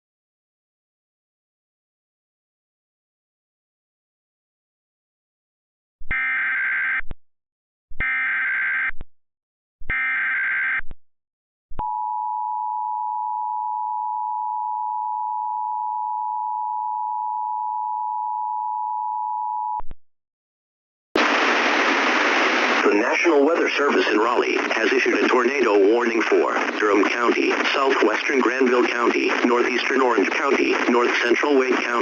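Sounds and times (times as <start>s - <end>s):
radio static hiss: 21.2s - 32.0s.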